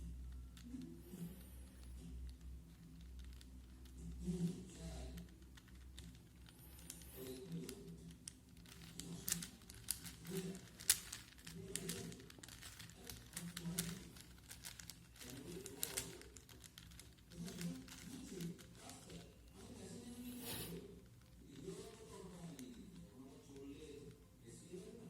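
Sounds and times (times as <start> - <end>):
puzzle cube layers clicking: 7.6 - 19.2.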